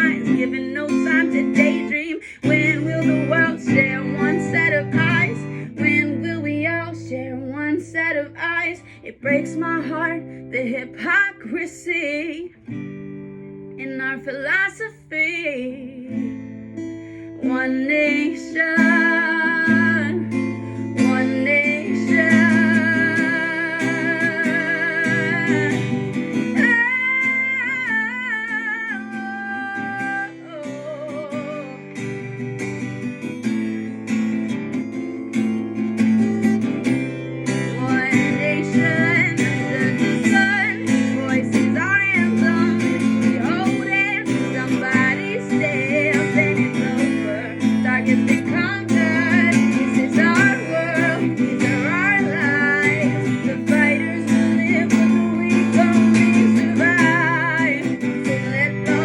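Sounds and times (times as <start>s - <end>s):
acoustic guitar strummed and picked: 0.0s - 59.0s
bending guitar melody line: 0.0s - 59.0s.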